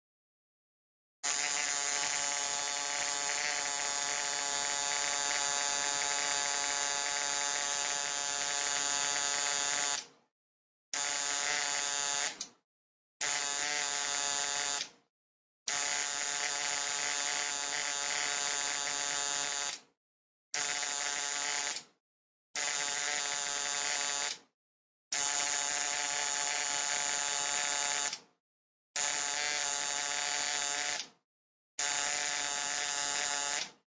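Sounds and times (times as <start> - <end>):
electric arc buzzing: 1.2 - 7.0.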